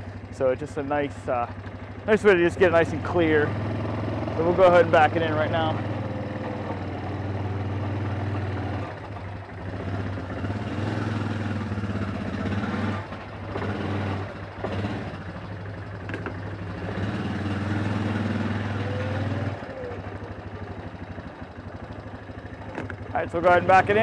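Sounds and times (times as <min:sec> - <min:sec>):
atv engine running at low speed: 0:00.0 - 0:24.0.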